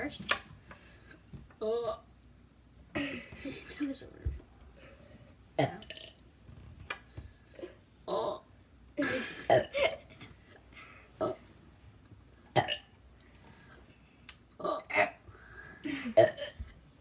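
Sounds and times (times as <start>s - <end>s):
boys burping: 1.6s - 2.1s, 2.9s - 3.8s, 5.6s - 6.1s, 7.6s - 10.3s, 11.2s - 11.4s, 12.6s - 12.9s, 14.6s - 15.2s, 15.8s - 16.7s.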